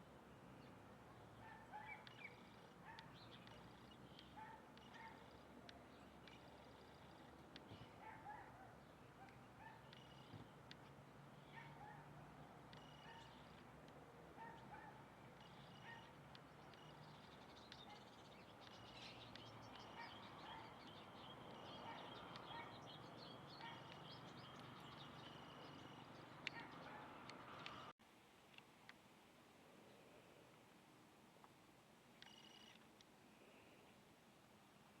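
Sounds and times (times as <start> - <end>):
faint birds chirping: 0.0 - 28.0.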